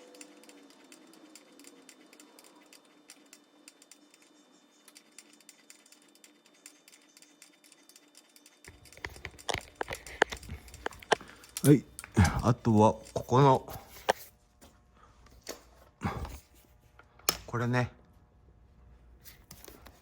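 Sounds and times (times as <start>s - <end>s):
metal hand tools clicking: 8.7s - 13.2s.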